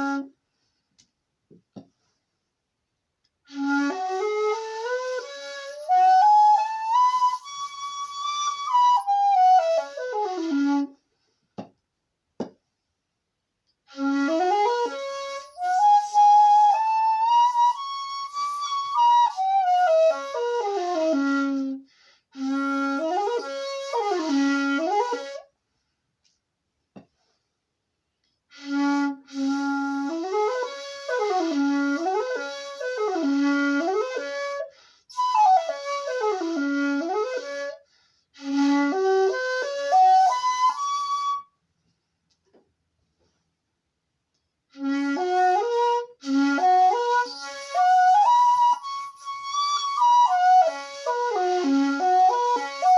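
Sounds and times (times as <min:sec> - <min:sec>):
shakuhachi flute playing: 0:00.0 - 0:00.4, 0:03.4 - 0:11.0, 0:13.9 - 0:25.6, 0:28.5 - 0:41.6, 0:44.7 - 0:52.9.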